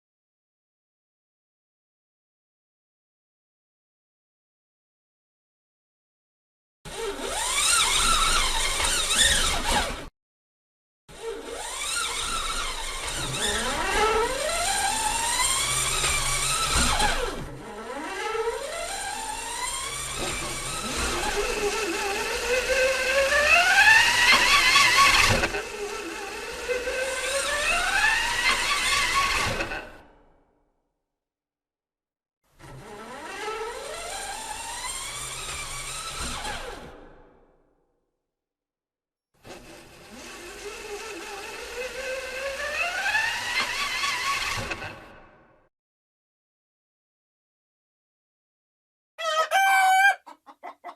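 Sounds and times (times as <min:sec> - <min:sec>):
electric car motor whine: 0:06.9 - 0:10.0, 0:11.2 - 0:29.6, 0:39.5 - 0:44.8.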